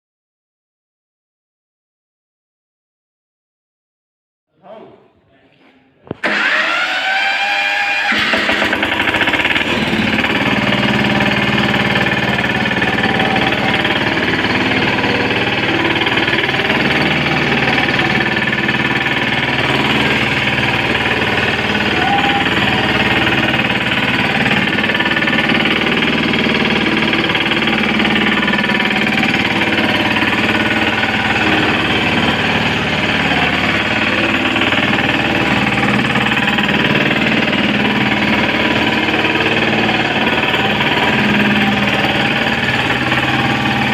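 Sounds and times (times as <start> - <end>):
road roller engine running: 6.2 - 43.9.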